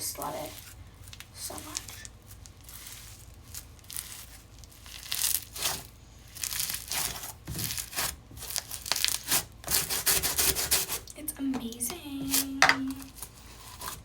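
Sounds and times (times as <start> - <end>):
hands squelching sticky slime: 0.0 - 10.1.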